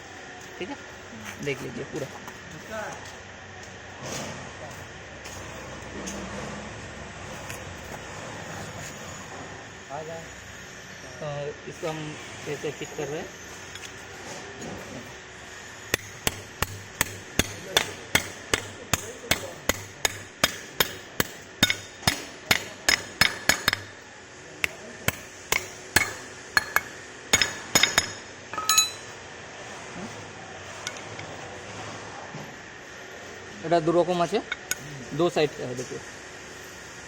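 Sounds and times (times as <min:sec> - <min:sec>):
hammer striking metal: 0:15.9 - 0:24.0, 0:24.6 - 0:29.2.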